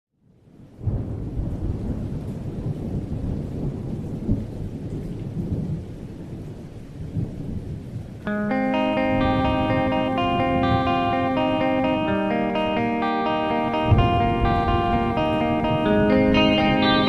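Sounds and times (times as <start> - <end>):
steady rain: 0.2 - 17.0
thunder rumbling: 0.8 - 17.0
distorted guitar music: 8.3 - 17.0.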